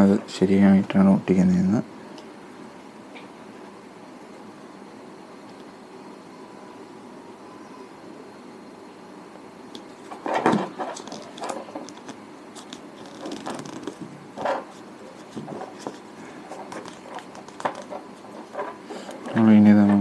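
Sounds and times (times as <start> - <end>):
wrapper crinkling: 11.0 - 14.1.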